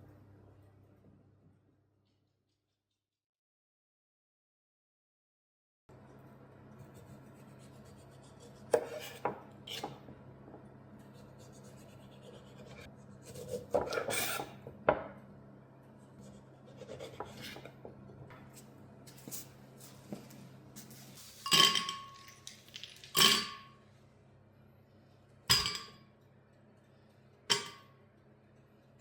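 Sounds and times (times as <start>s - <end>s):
steady low hum: 5.9s - 22.2s.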